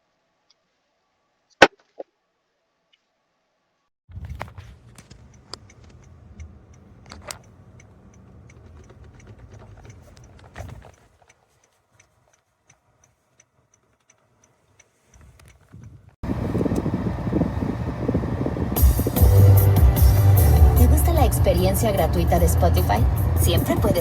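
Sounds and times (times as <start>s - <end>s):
sharp clicks: 4.9s - 16.0s
faint light ticking: 5.1s - 16.1s
low rumble: 16.2s - 24.0s.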